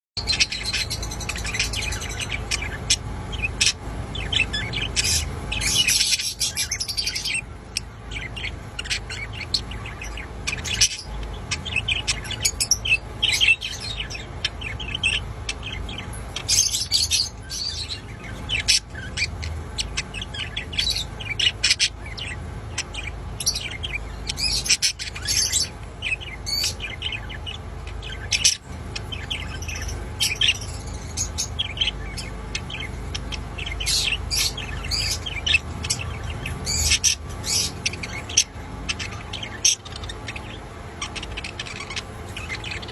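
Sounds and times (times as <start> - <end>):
budgerigar chattering: 0.2 - 42.9
low steady hum: 0.2 - 42.9.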